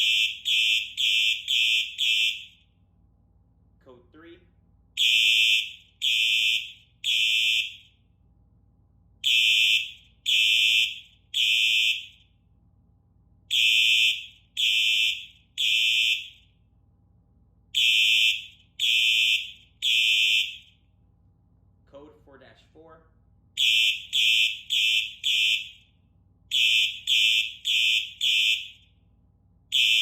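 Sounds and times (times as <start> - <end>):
fire alarm horns blasting: 0.0 - 2.9, 4.9 - 8.1, 9.2 - 12.5, 13.4 - 16.7, 17.7 - 20.9, 23.6 - 29.1, 29.7 - 30.0.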